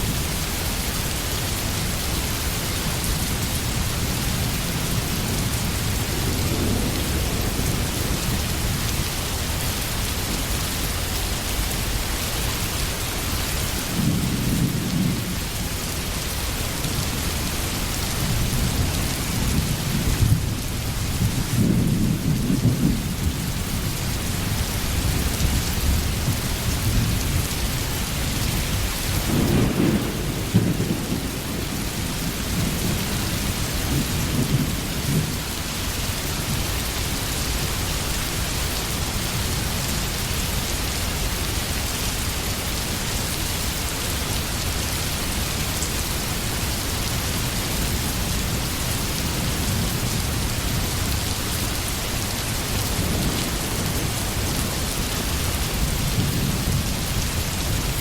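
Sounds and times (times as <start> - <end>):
heavy rain: 0.0 - 58.0
distant thunder rolling: 5.6 - 9.1, 29.1 - 35.5.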